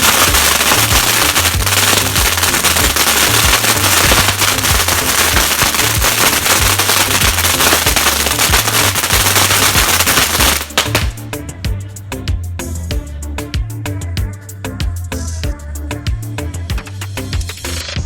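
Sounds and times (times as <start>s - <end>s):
firecrackers popping: 0.0s - 11.2s
background music with bass line: 0.0s - 18.0s.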